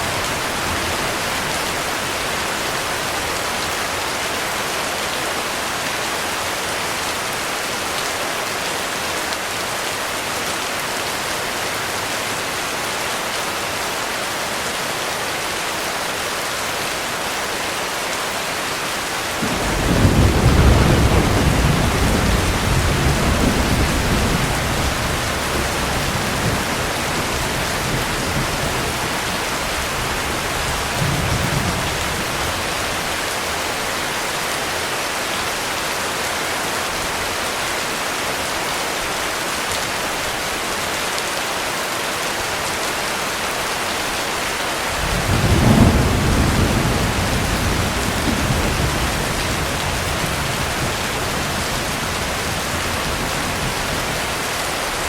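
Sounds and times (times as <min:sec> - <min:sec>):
heavy rain hissing: 0:00.0 - 0:08.1, 0:15.2 - 0:41.0, 0:41.6 - 0:55.0
thunder rumbling: 0:19.4 - 0:33.2, 0:45.0 - 0:54.2.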